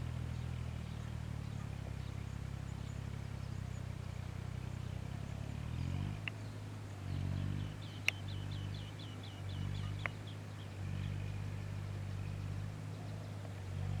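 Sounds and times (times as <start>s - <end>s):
low engine hum: 0.0s - 14.0s
songbird trilling: 7.6s - 11.3s.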